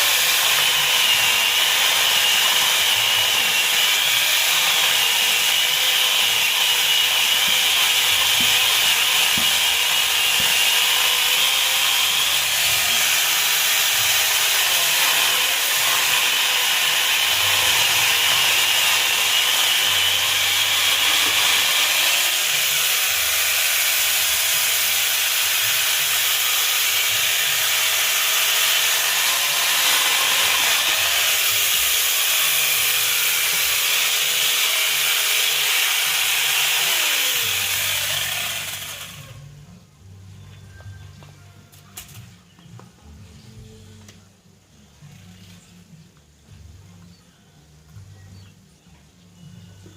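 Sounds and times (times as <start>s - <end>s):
electric chainsaw cutting wood: 0.0s - 39.5s.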